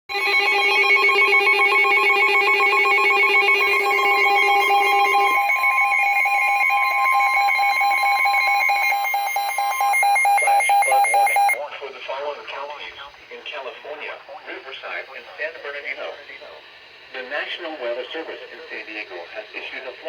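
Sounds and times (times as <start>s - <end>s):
steady warning alarm tone: 0.1s - 11.7s.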